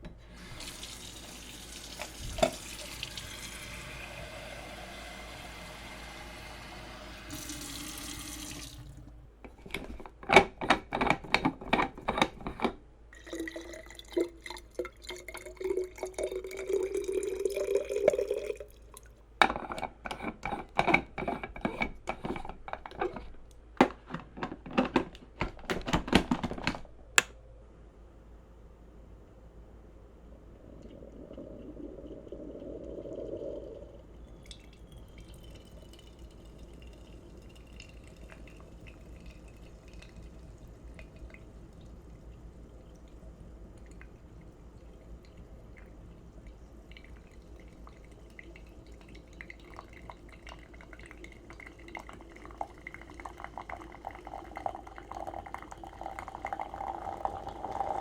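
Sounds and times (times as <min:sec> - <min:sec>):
espresso machine hissing: 0:00.3 - 0:08.6
hiss with rising tone: 0:30.2 - 0:34.2.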